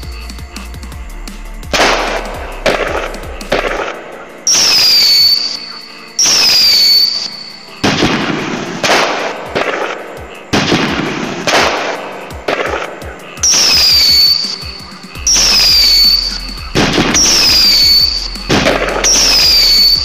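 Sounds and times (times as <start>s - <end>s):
falling firework whistles: 1.3s - 9.9s, 10.5s - 20.0s
firework bangs with crackle: 1.7s - 5.4s, 7.8s - 20.0s.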